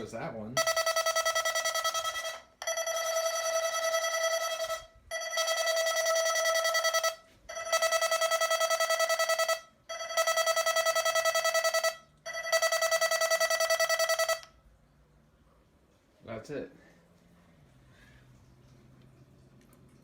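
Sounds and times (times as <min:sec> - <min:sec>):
high pulsing siren tone: 0:00.6 - 0:14.5.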